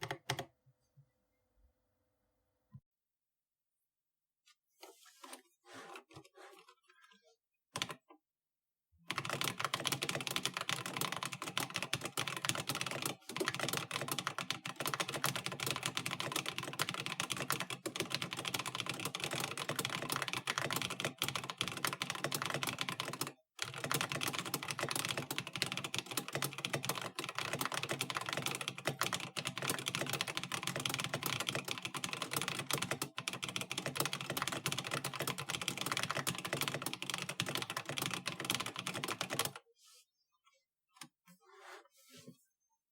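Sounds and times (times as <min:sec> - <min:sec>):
fast typing on mechanical keyboard: 0:09.1 - 0:39.6.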